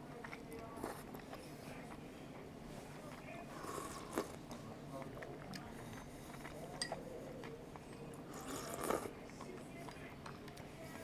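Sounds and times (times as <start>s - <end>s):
soft sip of soup: 2.9s - 7.2s, 7.8s - 9.2s.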